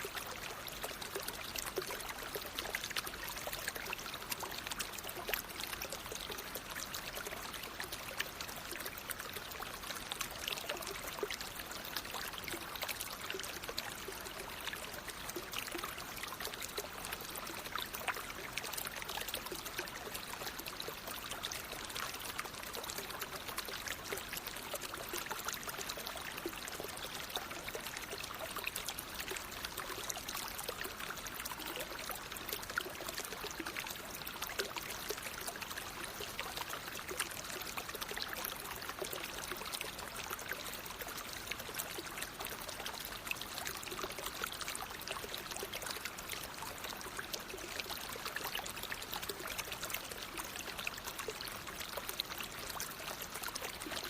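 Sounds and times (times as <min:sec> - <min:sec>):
flowing water: 0:00.0 - 0:54.0.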